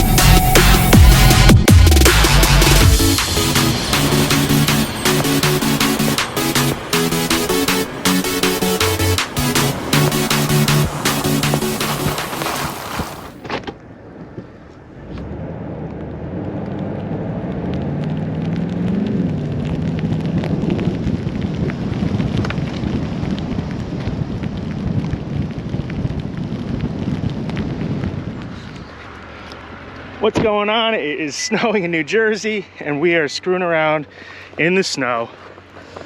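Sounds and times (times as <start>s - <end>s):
electronic music: 0.0s - 13.4s
truck engine revving under load: 0.0s - 13.4s.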